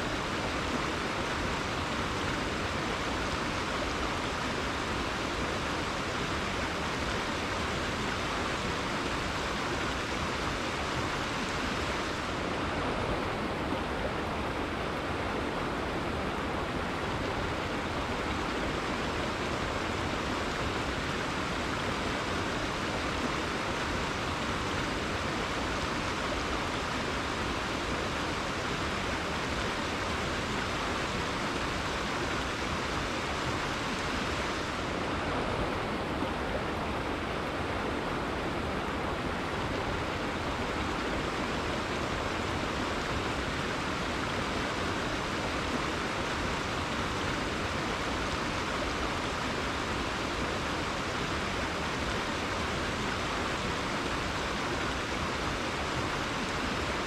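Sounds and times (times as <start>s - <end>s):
river rushing water: 0.0s - 57.0s.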